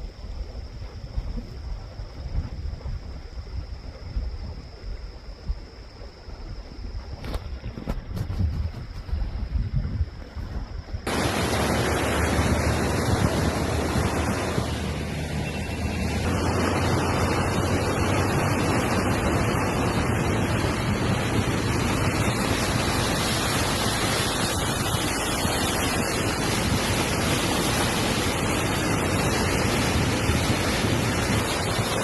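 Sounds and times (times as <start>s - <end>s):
heavy rain falling: 11.1s - 32.0s.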